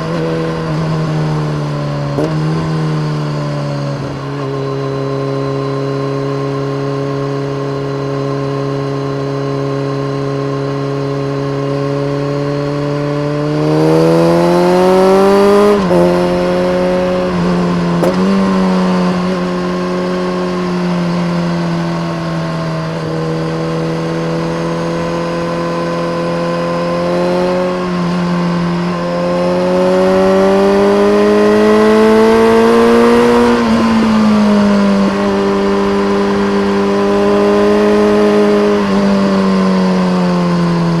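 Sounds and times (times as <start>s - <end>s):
motorcycle engine revving: 0.0s - 41.0s.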